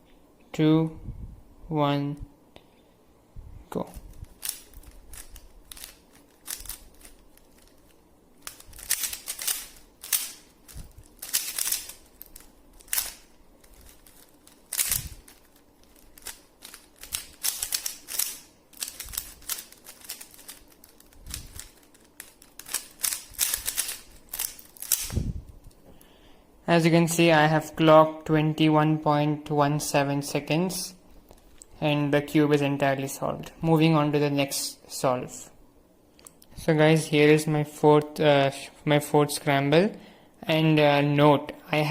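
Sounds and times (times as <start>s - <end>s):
puzzle cube clicking: 4.2s - 25.2s.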